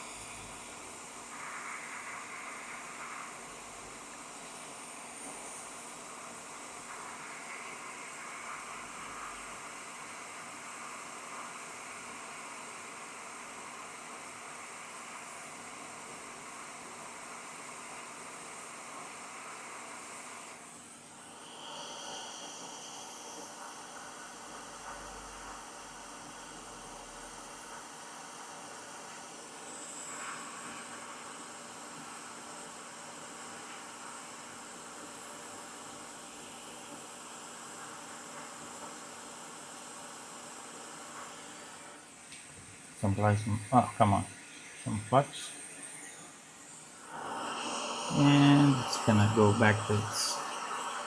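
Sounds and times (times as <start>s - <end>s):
steady hiss: 0.0s - 51.0s
faint high whine: 41.2s - 51.0s.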